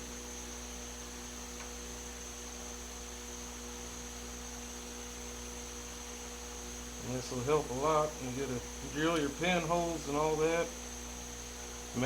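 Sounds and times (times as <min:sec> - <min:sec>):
electrical hum: 0:00.0 - 0:12.0
faint high whine: 0:00.0 - 0:12.0
light hiss: 0:07.0 - 0:12.0.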